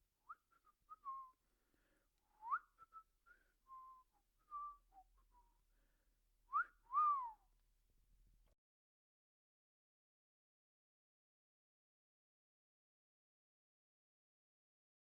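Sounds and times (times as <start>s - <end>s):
person whistling: 0.3s - 1.4s, 2.4s - 5.5s, 6.5s - 7.4s.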